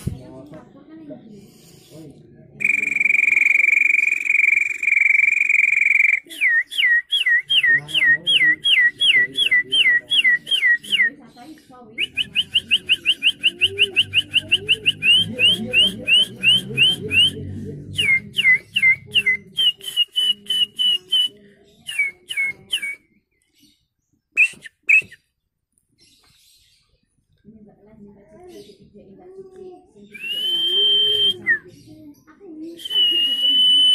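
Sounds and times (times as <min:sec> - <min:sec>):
man whistling bird calls: 0:02.6 - 0:11.1, 0:12.0 - 0:17.4, 0:18.0 - 0:21.3, 0:21.9 - 0:23.0, 0:24.4 - 0:25.3, 0:30.2 - 0:31.7, 0:32.8 - 0:33.9.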